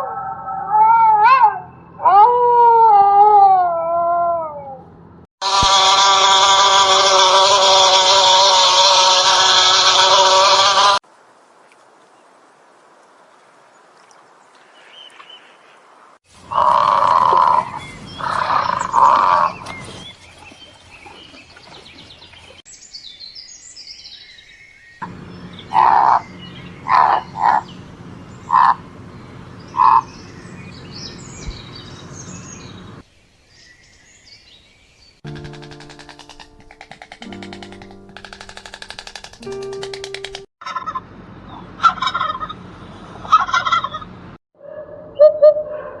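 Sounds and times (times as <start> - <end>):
wild animal calls: 5.4 - 11.0, 25.6 - 29.0, 29.7 - 30.2
birds chirping: 17.4 - 40.5.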